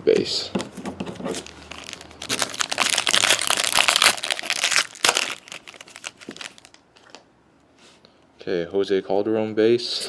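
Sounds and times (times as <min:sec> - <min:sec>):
foil wrapper crinkling: 0:01.3 - 0:07.2.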